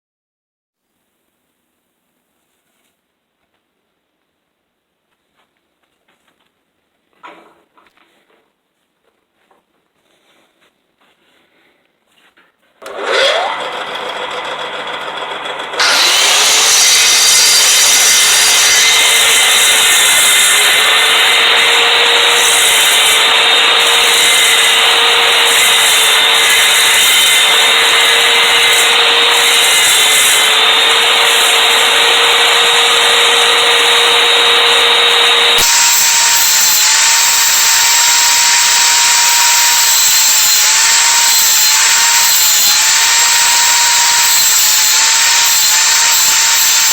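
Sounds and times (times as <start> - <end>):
woodworking machine cutting wood: 12.8 - 46.9.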